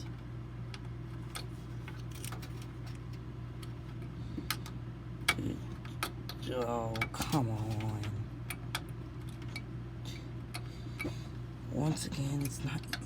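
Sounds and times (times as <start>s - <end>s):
steady low hum: 0.0s - 13.0s
clicks and taps of computer parts: 4.5s - 9.7s.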